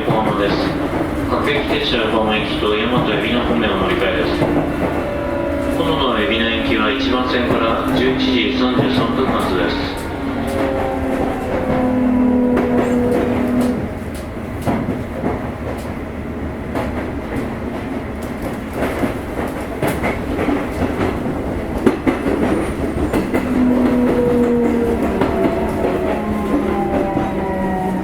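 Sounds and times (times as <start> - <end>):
wheels clacking over rail joints: 0.0 - 16.0, 16.7 - 28.0
train rumbling: 0.0 - 28.0.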